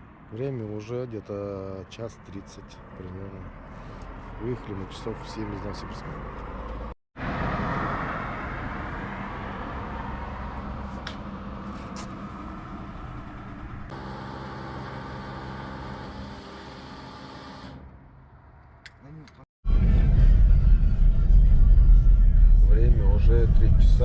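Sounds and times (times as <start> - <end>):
tyre and road noise: 0.0 - 19.4
car engine hum: 2.3 - 18.8.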